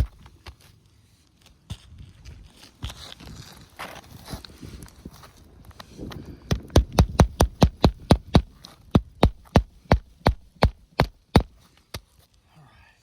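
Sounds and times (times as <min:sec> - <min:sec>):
hard knocks on a shingle roof: 0:00.0 - 0:00.2, 0:06.5 - 0:11.6.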